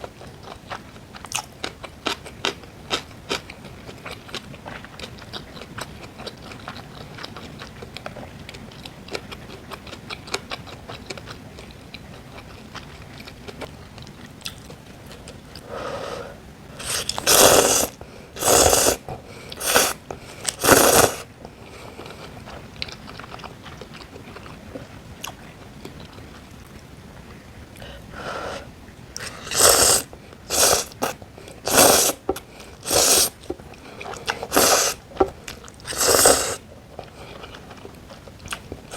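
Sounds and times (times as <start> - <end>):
quiet chewing: 0.0 - 16.1, 16.7 - 28.0, 29.1 - 38.9
loud bites and mouth noises: 16.8 - 21.3, 29.2 - 36.6.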